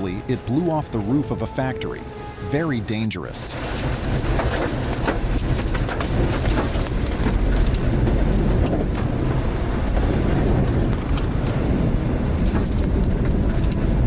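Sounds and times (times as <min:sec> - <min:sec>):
heavy rain: 0:00.0 - 0:14.0
debris clicking: 0:03.5 - 0:14.0
strong wind rumbling on microphone: 0:03.5 - 0:14.0.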